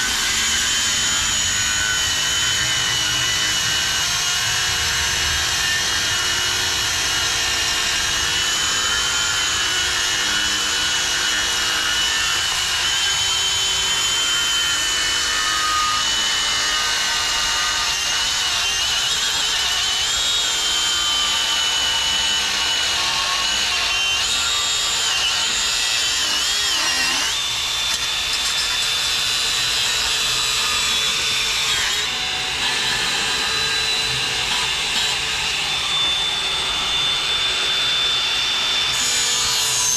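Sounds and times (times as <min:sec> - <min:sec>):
angle grinder cutting steel: 0:00.0 - 0:39.9.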